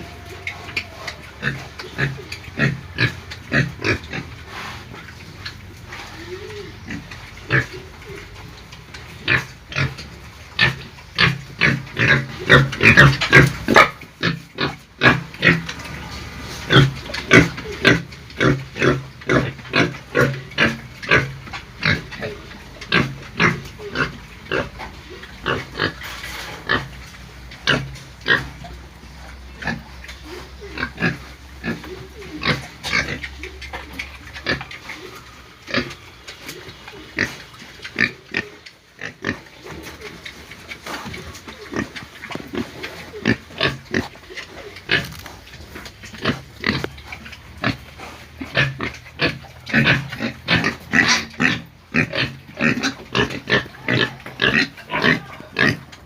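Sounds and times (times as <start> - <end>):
pigs squealing and grunting: 0.0 - 56.0.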